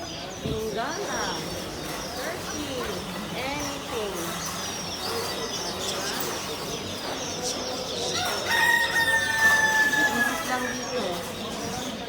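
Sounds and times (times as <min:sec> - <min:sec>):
small birds chirping: 0:00.0 - 0:12.0
rooster crowing: 0:08.2 - 0:10.8.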